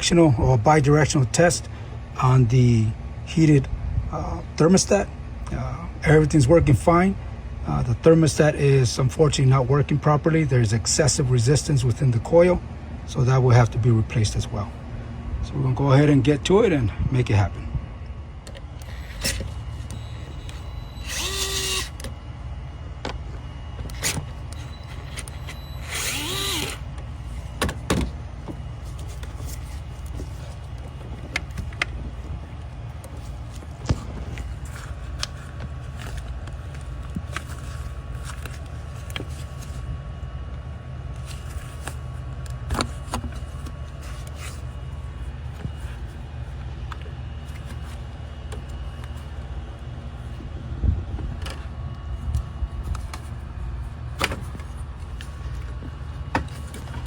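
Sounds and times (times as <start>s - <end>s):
steady low rumble: 0.0s - 57.0s
cordless power tool whirring: 18.6s - 22.2s, 23.9s - 27.0s.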